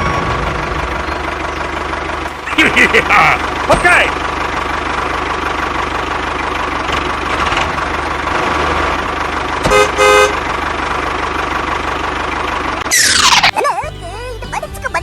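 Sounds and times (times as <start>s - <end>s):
engine chugging: 0.0s - 15.0s
horn toots: 9.6s - 10.5s.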